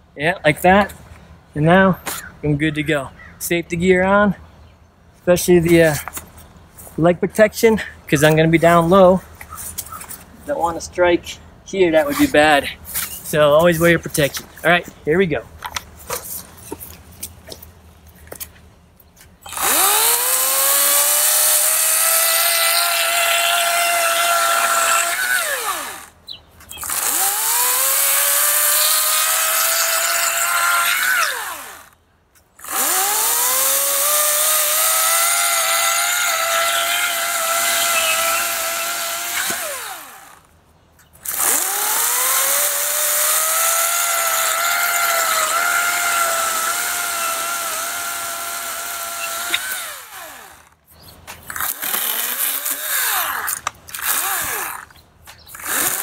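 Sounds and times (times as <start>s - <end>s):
electric chainsaw cutting log: 19.4s - 32.0s, 32.6s - 40.5s, 41.2s - 50.8s, 51.5s - 55.0s, 55.6s - 56.0s.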